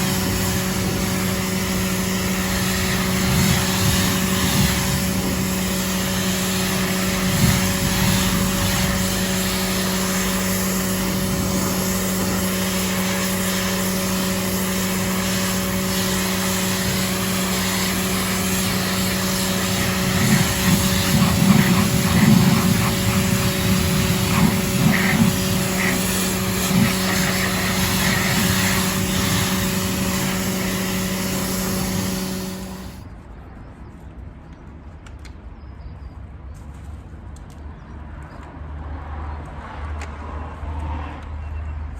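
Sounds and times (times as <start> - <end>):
pressure washer motor humming: 0.0 - 33.0
water jet hissing: 0.0 - 33.0.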